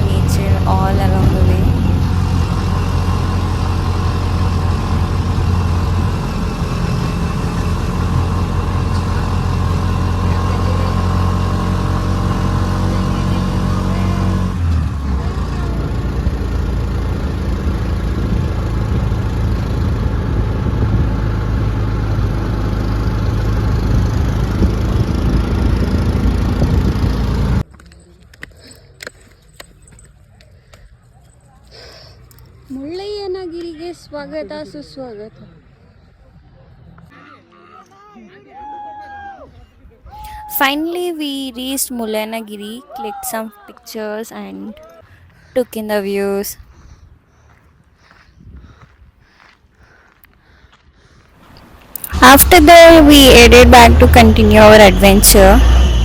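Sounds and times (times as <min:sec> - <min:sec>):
auto-rickshaw engine running: 0:00.0 - 0:37.1, 0:51.4 - 0:56.0.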